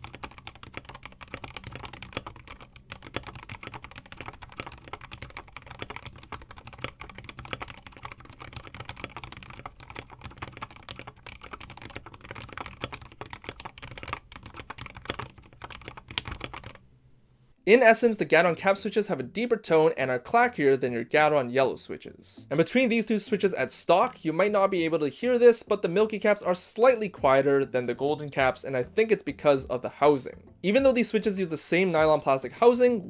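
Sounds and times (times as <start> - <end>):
typing on mechanical keyboard: 0.0 - 16.8.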